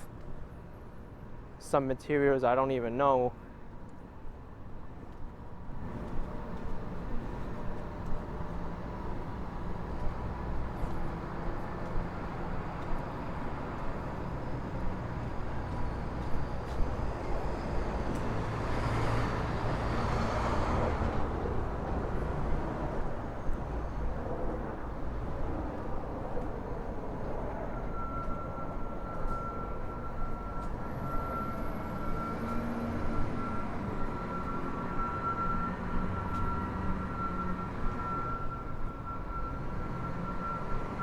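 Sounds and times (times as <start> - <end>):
low engine hum: 3.9 - 41.0
vehicle passing by: 15.0 - 26.2.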